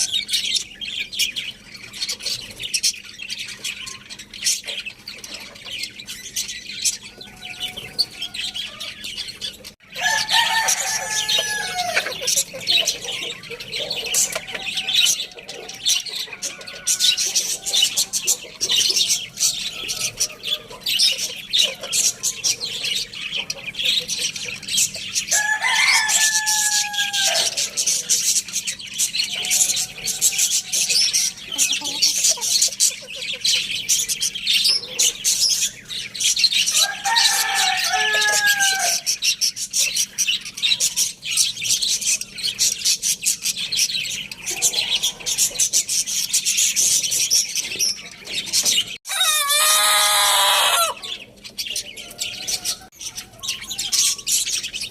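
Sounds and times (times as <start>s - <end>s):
roosters crowing: 0.0s - 0.4s, 6.8s - 32.8s, 34.7s - 39.4s, 44.0s - 45.8s, 47.8s - 54.9s
small birds chirping: 0.0s - 54.9s.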